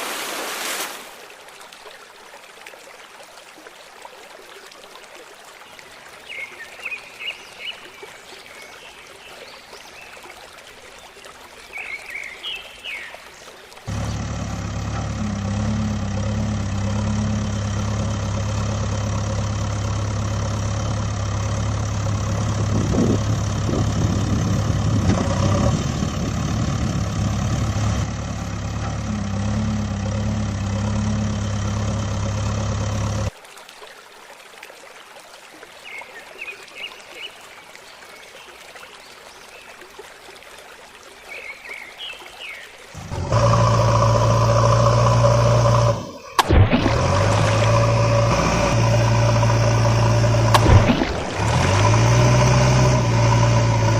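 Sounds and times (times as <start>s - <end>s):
vehicle engine humming: 13.8s - 33.4s, 43.0s - 53.9s.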